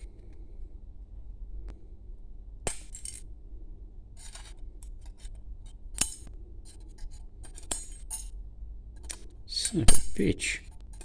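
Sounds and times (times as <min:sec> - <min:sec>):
steady low hum: 0:08.4 - 0:11.0.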